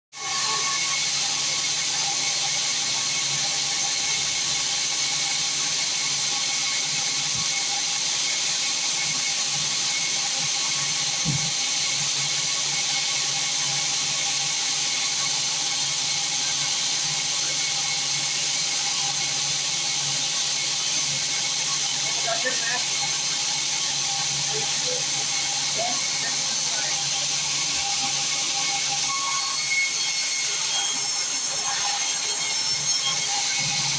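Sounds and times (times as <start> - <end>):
sawmill machinery hissing: 12.8 - 33.9.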